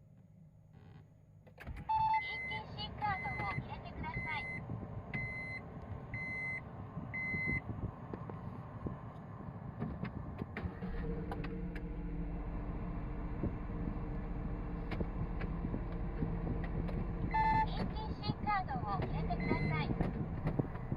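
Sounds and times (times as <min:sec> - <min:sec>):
low vehicle hum: 0:00.0 - 0:20.9
short electronic beeps: 0:01.9 - 0:04.6, 0:17.3 - 0:18.0, 0:19.3 - 0:19.9.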